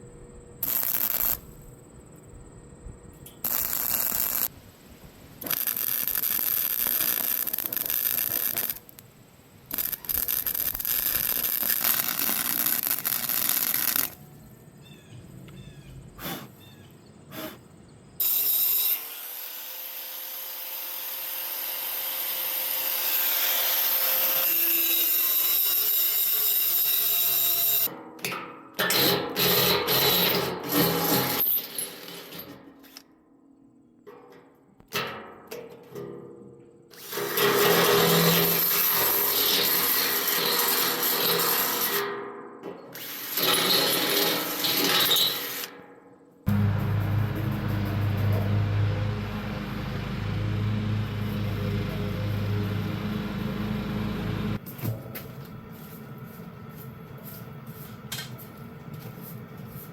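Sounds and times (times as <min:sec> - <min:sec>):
welding crackle: 0:00.6 - 0:01.6, 0:03.3 - 0:14.2, 0:37.2 - 0:42.0
angle grinder grinding: 0:03.4 - 0:04.5, 0:09.7 - 0:14.2.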